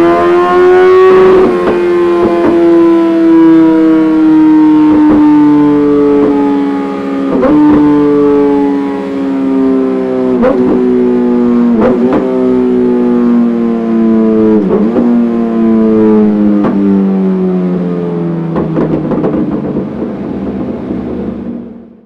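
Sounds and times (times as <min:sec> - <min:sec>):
motorcycle engine winding down: 0:00.0 - 0:16.1
sharp exhaust pops: 0:04.8 - 0:06.5, 0:07.3 - 0:08.5, 0:11.8 - 0:12.3, 0:14.6 - 0:15.2, 0:18.5 - 0:20.9.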